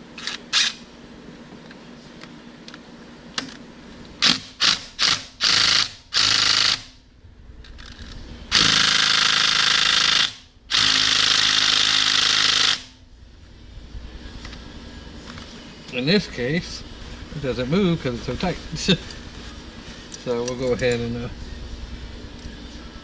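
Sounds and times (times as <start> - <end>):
impact wrench hammering: 4.2 - 6.9, 8.5 - 12.9.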